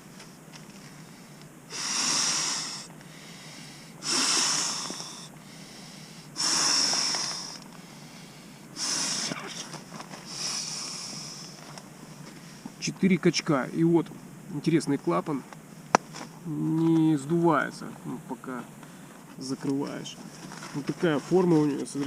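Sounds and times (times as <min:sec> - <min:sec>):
breath blown into a valve: 0:01.7 - 0:03.4, 0:04.0 - 0:05.8, 0:06.4 - 0:07.6, 0:08.8 - 0:09.4.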